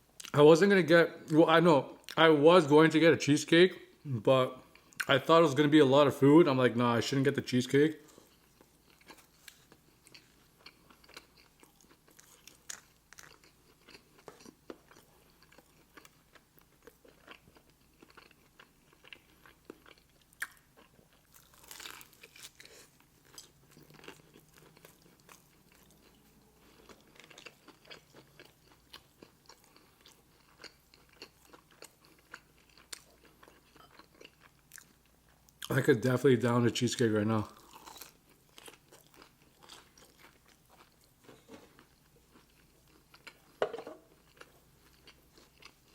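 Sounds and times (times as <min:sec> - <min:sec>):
person chewing: 0:08.0 - 0:35.7, 0:37.4 - 0:45.9.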